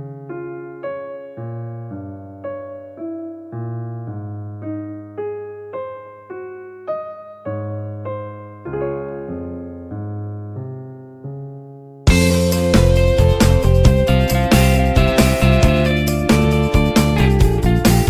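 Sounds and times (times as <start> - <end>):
electric piano melody: 0.0 - 18.0
sustained bass notes: 12.1 - 18.0.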